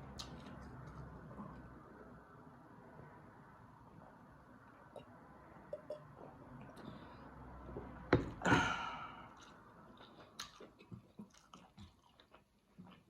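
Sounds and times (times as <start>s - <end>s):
loud breathy noise: 8.4s - 9.4s
chewing and mouth sounds: 9.3s - 13.0s.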